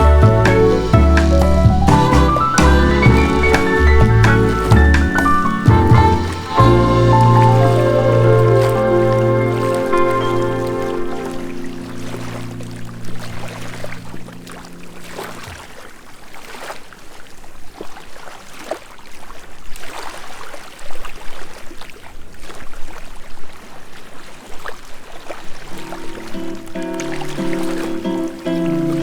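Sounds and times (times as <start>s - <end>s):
background music: 0.0s - 14.6s, 25.7s - 29.0s
sea waves lapping: 0.0s - 29.0s.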